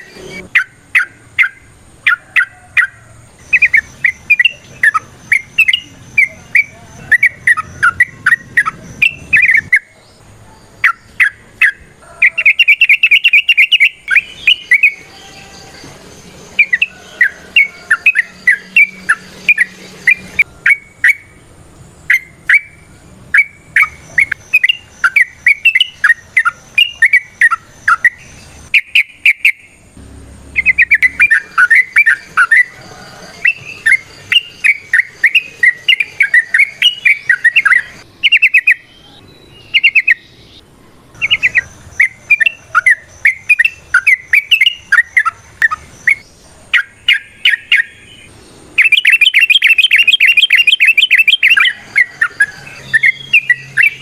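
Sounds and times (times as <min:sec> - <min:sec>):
bulbul singing chattering phrases: 0:00.0 - 0:54.0.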